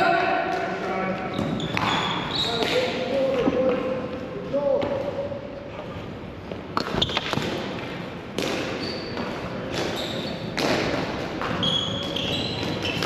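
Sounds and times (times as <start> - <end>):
shoe squeaks: 1.2 - 2.8, 6.8 - 7.4, 8.7 - 10.6, 11.6 - 13.0.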